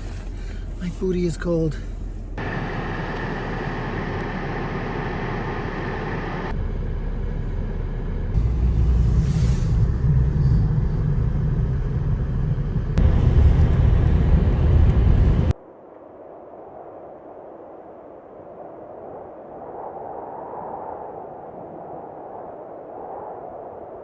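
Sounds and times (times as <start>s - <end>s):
van engine rumble: 0.0s - 15.6s.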